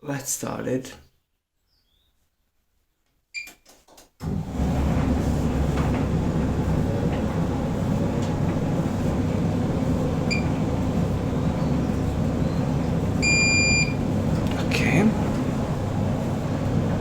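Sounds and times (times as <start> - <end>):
tumble dryer drum rumbling: 4.2 - 17.0.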